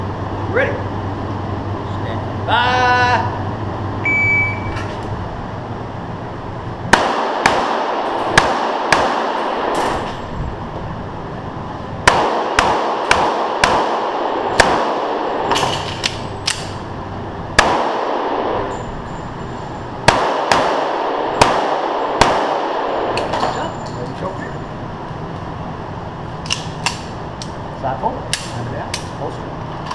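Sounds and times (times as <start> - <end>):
pistol shots echoing indoors: 6.9 - 10.2, 12.0 - 16.8, 17.6 - 18.7, 20.0 - 23.4.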